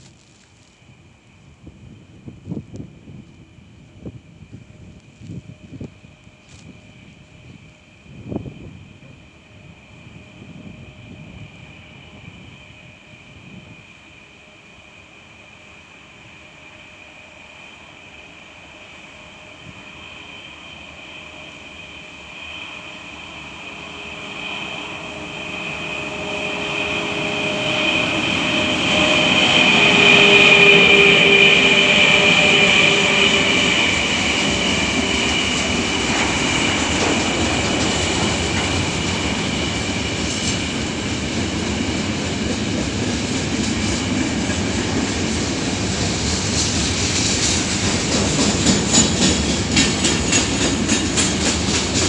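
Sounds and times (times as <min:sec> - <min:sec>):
electric locomotive whine and rumble: 0:00.0 - 0:52.0
wheels clicking over rail joints: 0:46.5 - 0:52.0.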